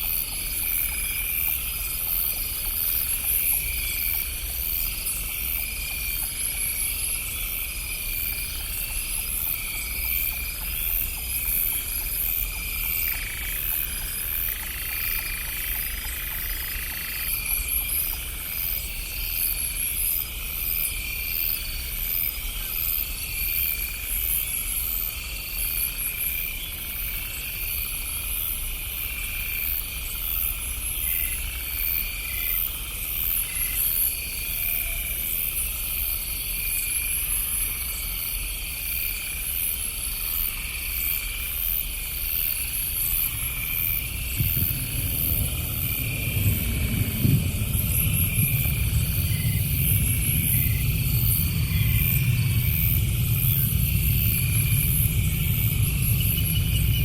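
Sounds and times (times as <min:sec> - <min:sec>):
insects trilling: 0:00.0 - 0:57.0
frogs calling: 0:39.6 - 0:57.0
faint low rumble: 0:43.2 - 0:57.0.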